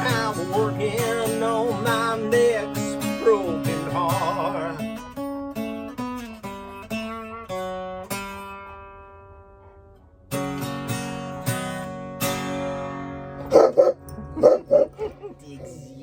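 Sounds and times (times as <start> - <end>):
acoustic guitar picking: 0.0 - 16.0
dog barking: 13.4 - 15.1.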